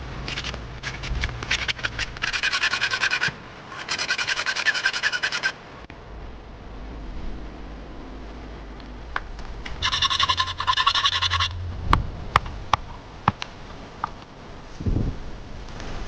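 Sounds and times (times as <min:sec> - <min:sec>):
rapid scraping strokes: 0:00.2 - 0:05.6, 0:09.5 - 0:12.9.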